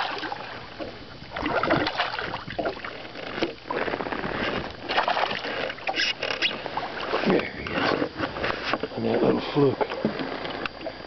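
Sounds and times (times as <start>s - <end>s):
water splashing: 0.0s - 8.1s.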